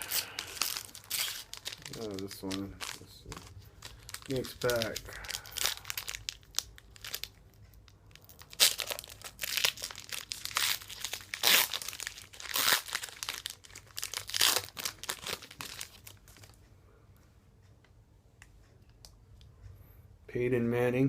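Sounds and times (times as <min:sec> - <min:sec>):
wrapper tearing and crinkling: 0:00.0 - 0:07.4, 0:08.1 - 0:16.5.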